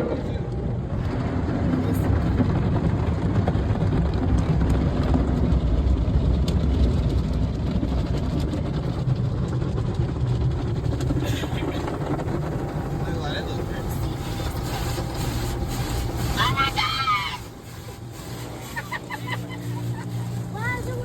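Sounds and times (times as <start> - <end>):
car wash machinery rumble: 0.0 - 21.0
water spray: 12.6 - 21.0.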